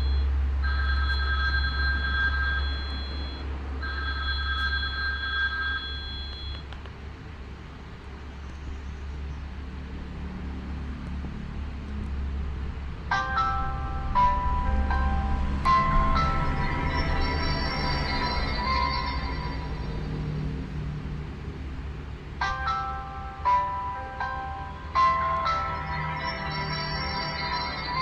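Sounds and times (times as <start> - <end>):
phone ringtone: 0.0 - 6.7, 13.1 - 20.8, 22.4 - 28.0
low hum: 12.7 - 28.0.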